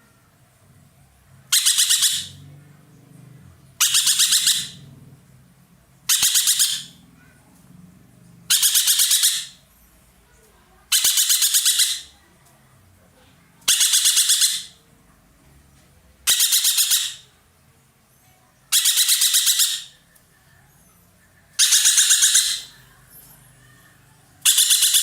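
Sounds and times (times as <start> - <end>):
songbird harsh chattering calls: 1.5 - 2.4, 3.8 - 4.8, 6.1 - 7.0, 8.5 - 9.7, 10.9 - 12.2, 13.6 - 14.8, 16.2 - 17.3, 18.7 - 20.0, 21.6 - 22.8, 24.4 - 25.0.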